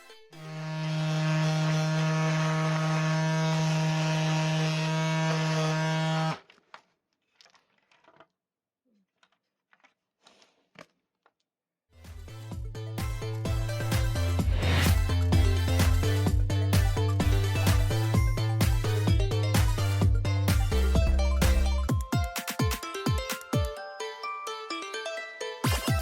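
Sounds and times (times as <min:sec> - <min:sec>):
music: 0:00.0 - 0:01.0, 0:12.0 - 0:26.0
cordless power tool buzzing: 0:00.3 - 0:06.4.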